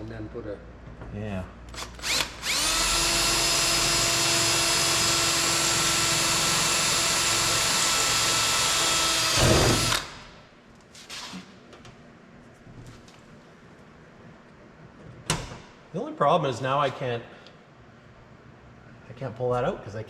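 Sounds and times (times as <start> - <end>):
power drill drilling sheet metal: 1.8 - 10.2.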